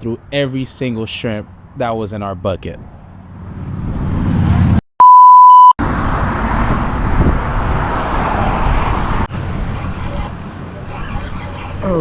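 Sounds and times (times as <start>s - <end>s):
traffic: 0.0s - 12.0s
wind: 0.0s - 12.0s
censor bleep tone: 5.0s - 5.8s.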